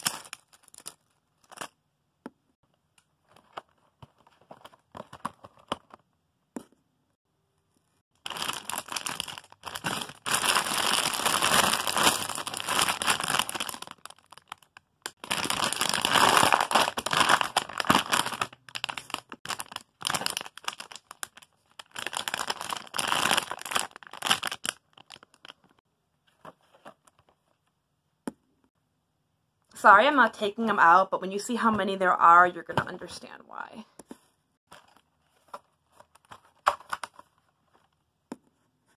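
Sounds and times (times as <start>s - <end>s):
plastic packaging crinkling: 0.0s - 1.7s, 8.2s - 25.8s.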